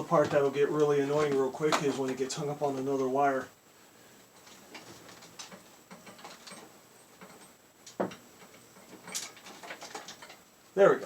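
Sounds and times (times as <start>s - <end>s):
cables clicking and tapping: 4.4s - 10.4s.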